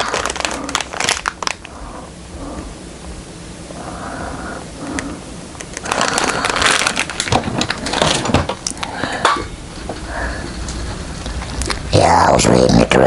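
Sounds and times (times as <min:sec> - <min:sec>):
plastic bag crinkling: 0:00.0 - 0:01.8, 0:05.6 - 0:08.9.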